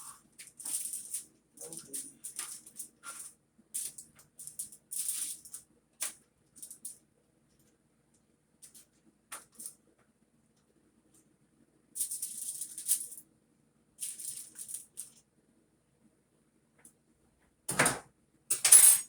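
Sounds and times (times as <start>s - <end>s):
kitchen wrapping crinkling: 0.0s - 6.9s.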